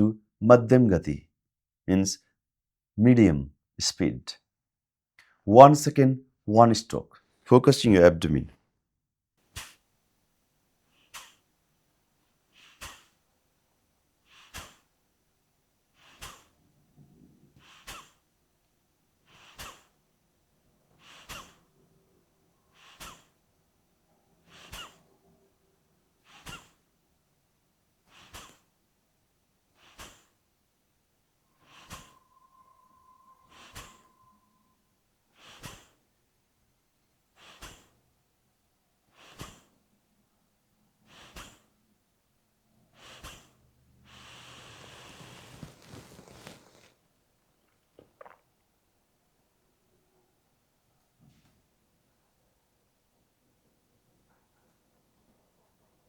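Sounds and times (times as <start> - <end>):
forceful nasal exhalations: 9.5 - 9.8, 10.9 - 11.5, 12.5 - 13.2, 14.3 - 14.9, 15.9 - 16.6, 17.6 - 18.2, 19.2 - 20.0, 20.9 - 21.7, 22.7 - 23.4, 24.4 - 25.1, 26.2 - 26.8, 28.0 - 28.8, 29.7 - 30.4, 31.5 - 34.4, 35.3 - 36.0, 37.4 - 38.0, 39.1 - 39.8, 41.1 - 41.7, 42.9 - 47.0, 48.0 - 48.5
long drawn-out breath: 31.5 - 36.0, 42.9 - 46.9.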